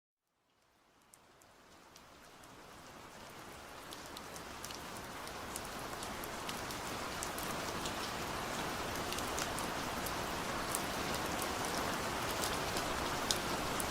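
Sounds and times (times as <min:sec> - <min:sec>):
steady rain falling: 0:00.2 - 0:13.9.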